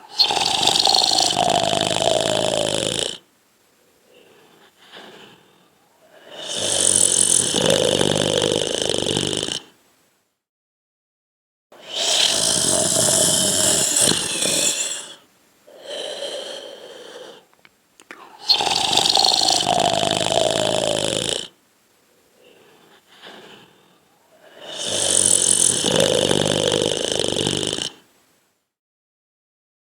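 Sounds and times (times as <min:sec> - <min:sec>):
person snoring: 0:00.0 - 0:03.3, 0:04.0 - 0:09.8, 0:11.8 - 0:21.6, 0:22.3 - 0:28.1
quiet breath: 0:03.6 - 0:07.4, 0:11.8 - 0:19.7, 0:21.5 - 0:25.7.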